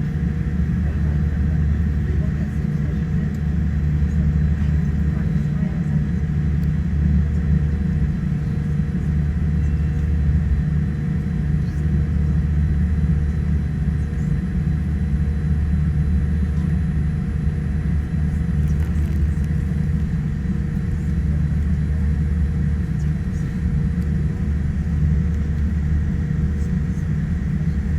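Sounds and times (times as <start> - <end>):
airplane cabin engine rumble: 0.0 - 27.9.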